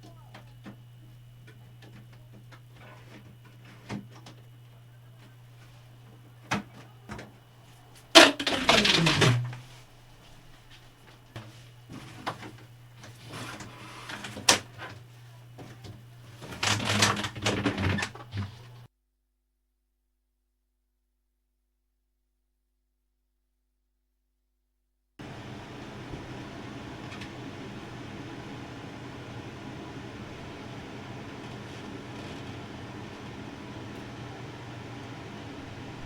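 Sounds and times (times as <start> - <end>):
objects knocking and scraping: 8.2 - 9.7
rustling scrape: 13.0 - 14.5
steady low hum: 25.2 - 36.0.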